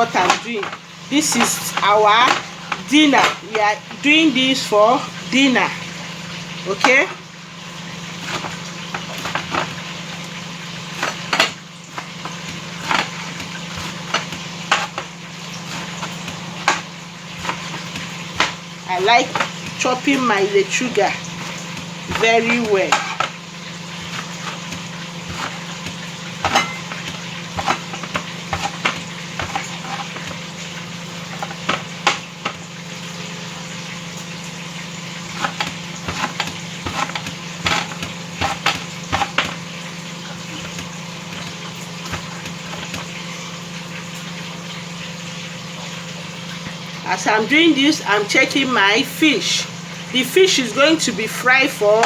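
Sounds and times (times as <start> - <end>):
fish sizzling in hot oil: 0.0 - 52.0
knife chopping on a board: 8.2 - 9.8, 10.9 - 18.6, 21.4 - 23.4, 24.0 - 30.4, 35.2 - 39.6.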